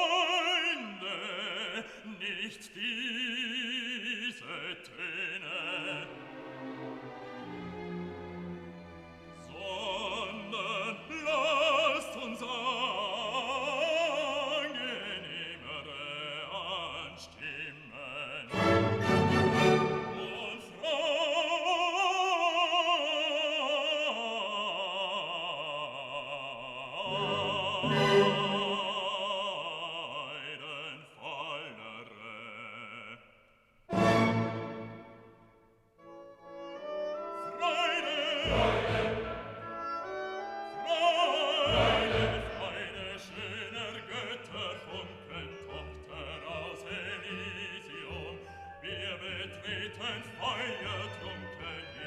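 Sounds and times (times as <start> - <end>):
operatic singing: 0.0 - 52.0
orchestral accompaniment: 5.6 - 13.6, 18.5 - 21.0, 27.0 - 29.5, 33.9 - 52.0.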